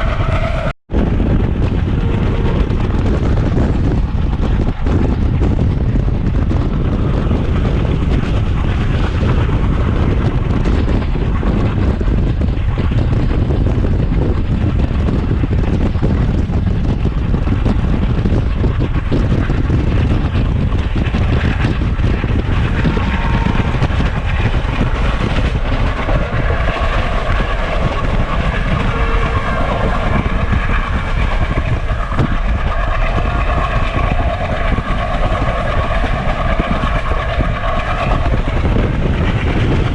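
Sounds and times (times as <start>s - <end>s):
train rumbling: 0.0s - 39.9s.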